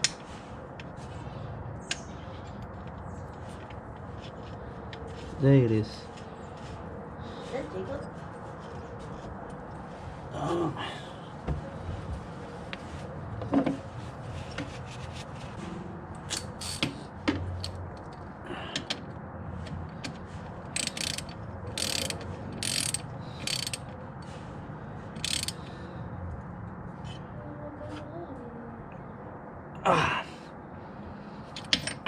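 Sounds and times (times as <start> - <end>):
ratchet wrench clicking: 16.3 - 16.9, 20.7 - 23.9, 25.2 - 25.7.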